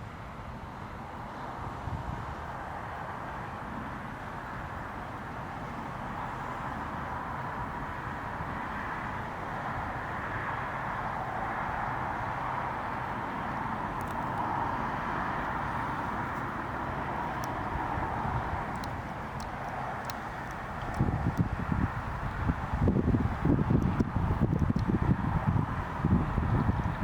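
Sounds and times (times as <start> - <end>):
jet engines roaring: 0.0 - 27.0.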